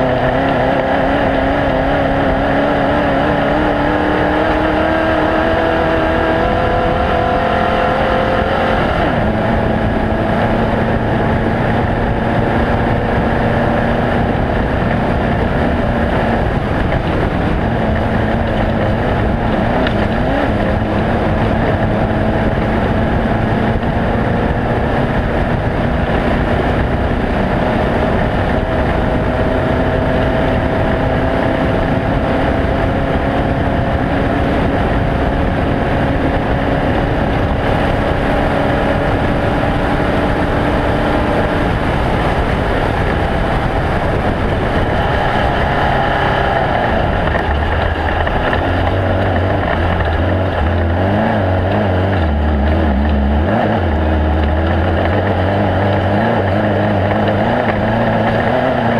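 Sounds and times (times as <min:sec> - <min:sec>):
race vehicle engine running hard: 0:00.0 - 0:58.9
wind noise: 0:00.0 - 0:58.9.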